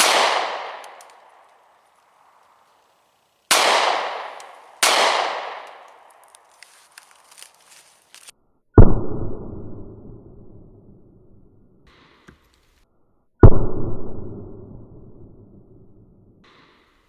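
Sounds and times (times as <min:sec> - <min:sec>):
pistol shots echoing: 0:00.0 - 0:01.5, 0:03.5 - 0:06.0.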